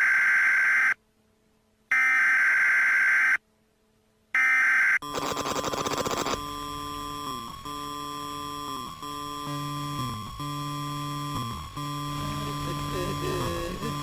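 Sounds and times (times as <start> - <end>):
harsh rattling buzz: 5.1 - 14.0
steady electronic tone: 6.2 - 14.0.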